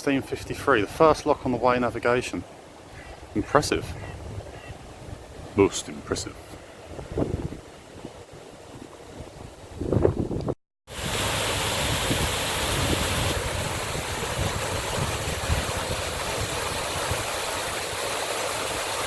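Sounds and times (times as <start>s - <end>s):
water rushing: 0.0s - 4.0s, 4.9s - 7.0s, 10.9s - 19.0s
wind buffeting microphone: 3.0s - 5.6s, 6.6s - 17.8s.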